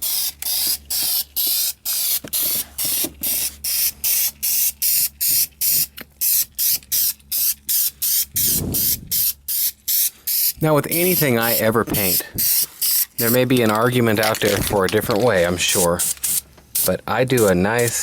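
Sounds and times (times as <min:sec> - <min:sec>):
aerosol spray can hissing: 0:00.0 - 0:13.4.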